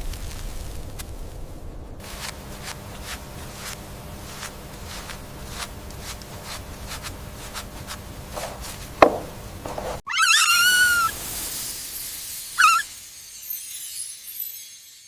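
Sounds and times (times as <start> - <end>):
animal squealing: 10.0 - 11.2, 12.6 - 12.9.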